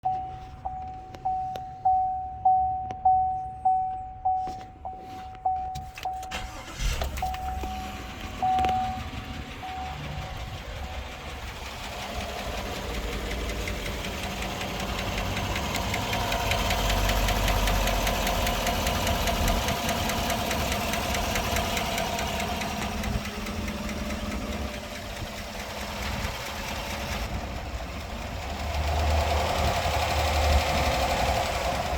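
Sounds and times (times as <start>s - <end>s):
warning chime: 0.0s - 11.4s
engine ticking: 4.8s - 31.9s
engine starting and idling: 6.0s - 31.9s.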